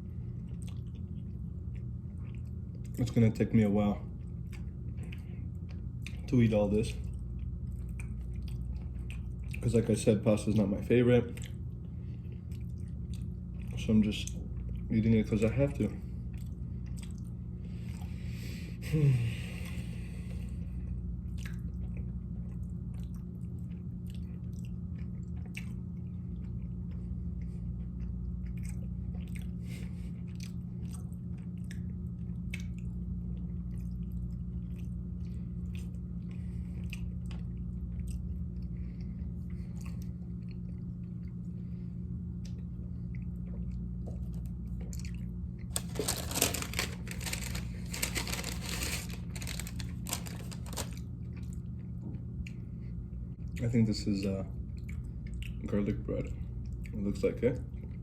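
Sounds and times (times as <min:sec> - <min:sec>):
chewing with mouth clicks: 0:00.0 - 0:03.1, 0:04.1 - 0:06.3, 0:07.0 - 0:09.9, 0:10.6 - 0:14.9, 0:16.0 - 0:18.2, 0:20.8 - 0:45.9, 0:49.2 - 0:53.7, 0:54.5 - 0:58.0
steady low hum: 0:00.0 - 0:58.0
loud crunching: 0:45.7 - 0:51.0.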